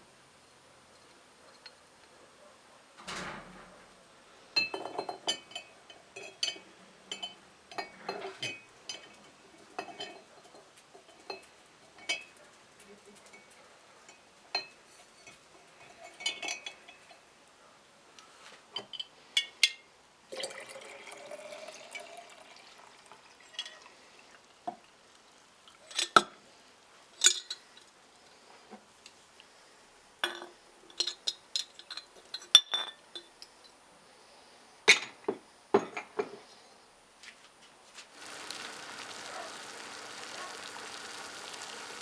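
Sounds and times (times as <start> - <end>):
liquid poured into a container: 20.3 - 24.6, 38.2 - 42.0
clinks of small hard objects: 27.2 - 27.9, 30.2 - 33.5.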